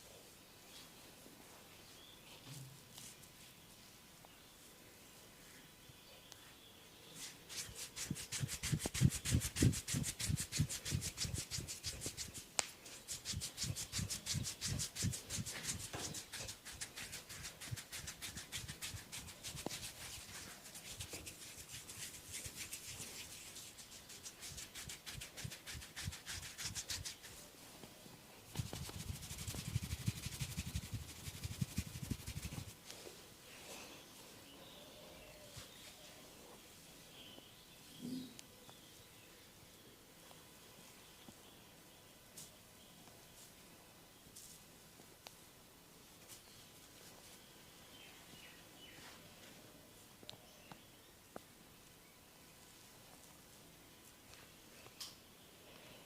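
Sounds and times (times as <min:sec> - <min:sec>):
hands rubbing through hair: 0:07.1 - 0:27.5, 0:28.5 - 0:33.2.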